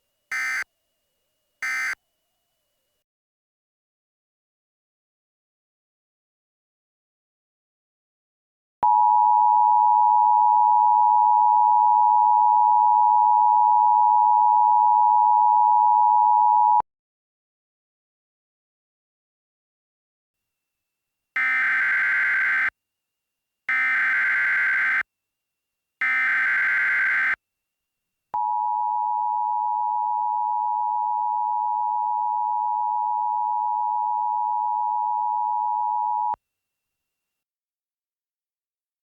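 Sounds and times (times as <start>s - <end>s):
buzzy data bursts: 21.4s - 22.7s, 26.1s - 27.4s.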